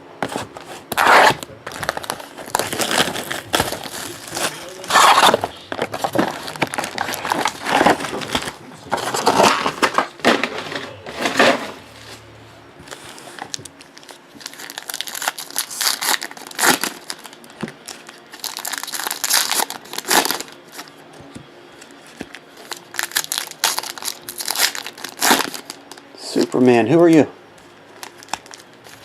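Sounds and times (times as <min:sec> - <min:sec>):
card pack wrappers crinkling: 0:00.3 - 0:11.7, 0:12.8 - 0:21.0, 0:21.8 - 0:27.2, 0:27.9 - 0:29.0.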